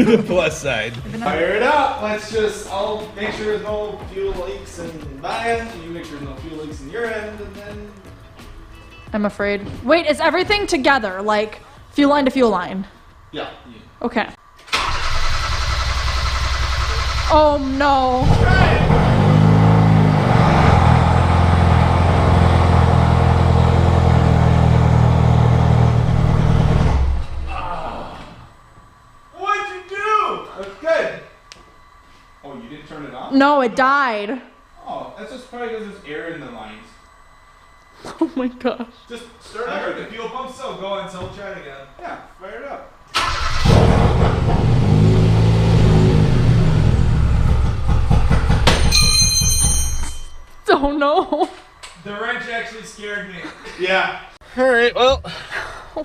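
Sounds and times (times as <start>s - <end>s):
car engine idling: 14.7s - 27.2s
wrench dropping with metallic clank: 48.8s - 50.4s.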